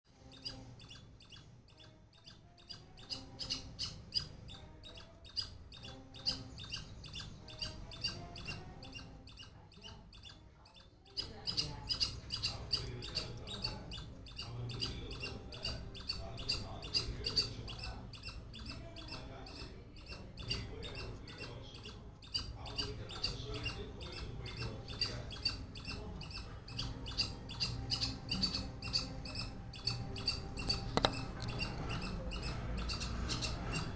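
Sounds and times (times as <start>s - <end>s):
squirrel chirping: 0.1s - 33.9s.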